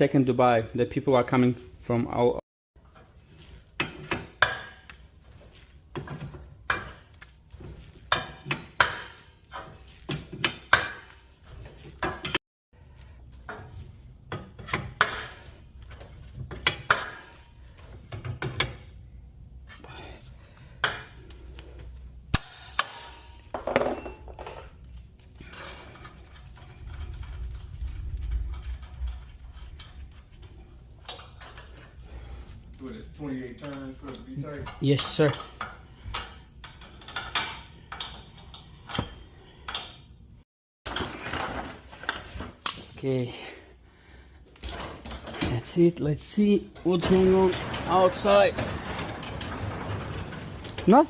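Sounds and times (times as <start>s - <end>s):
metallic clinks and clanks: 25.4s - 32.2s.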